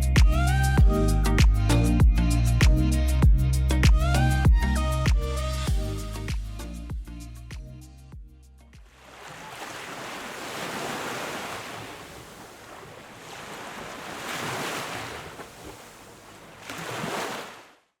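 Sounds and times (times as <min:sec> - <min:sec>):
surf breaking on beach: 0:09.0 - 0:17.8.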